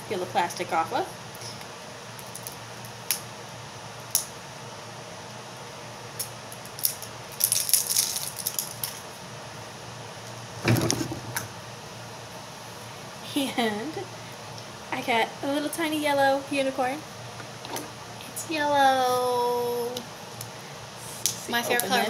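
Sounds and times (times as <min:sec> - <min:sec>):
plastic wrap crinkling: 0:06.7 - 0:09.0
plastic rustle: 0:06.9 - 0:09.0.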